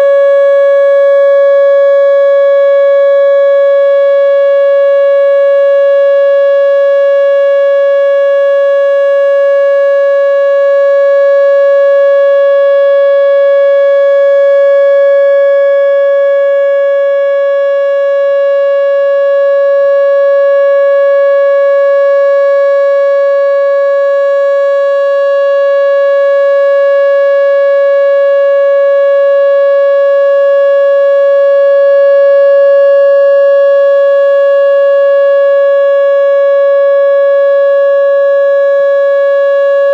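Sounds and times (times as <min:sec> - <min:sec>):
outdoor warning siren steady tone: 0:00.0 - 0:39.9.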